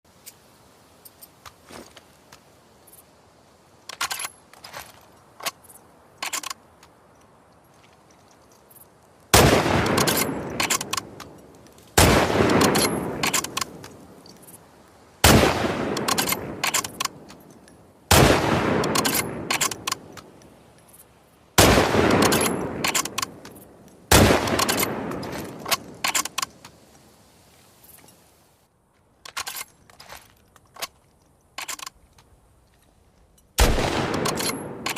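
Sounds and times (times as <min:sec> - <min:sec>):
rifle shots with long echo: 0:09.3 - 0:11.3, 0:12.0 - 0:14.1, 0:15.2 - 0:17.3, 0:18.1 - 0:20.2, 0:21.6 - 0:23.4, 0:24.1 - 0:26.1, 0:33.6 - 0:34.9.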